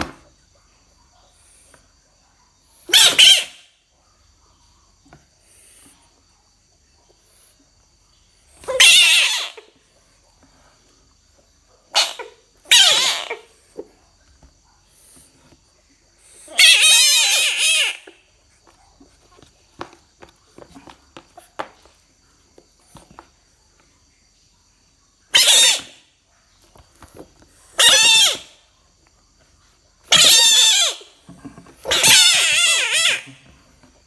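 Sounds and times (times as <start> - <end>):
frog squealing: 2.9 - 3.7, 8.6 - 9.8, 11.9 - 13.6, 16.3 - 18.2, 25.3 - 26.0, 27.8 - 28.6, 30.1 - 31.2, 31.8 - 33.4.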